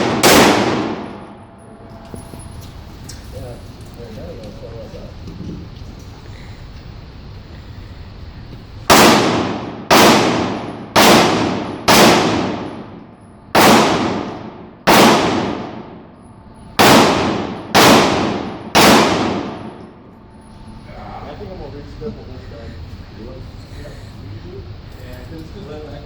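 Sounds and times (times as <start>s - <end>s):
pistol shots with echo: 0.0s - 1.4s, 8.9s - 16.1s, 16.8s - 20.0s.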